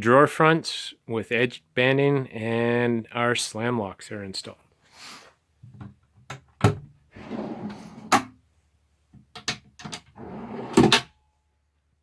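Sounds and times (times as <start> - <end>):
drawer sliding on runners: 7.1 - 8.3, 9.9 - 11.1
drawer thunk: 9.9 - 11.1.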